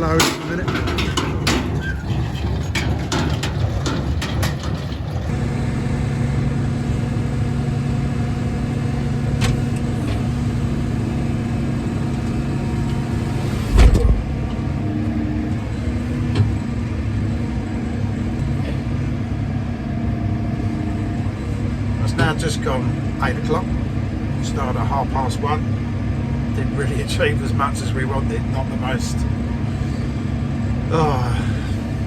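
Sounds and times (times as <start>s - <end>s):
tractor engine running: 0.0s - 32.0s
loud low thump: 13.1s - 14.6s.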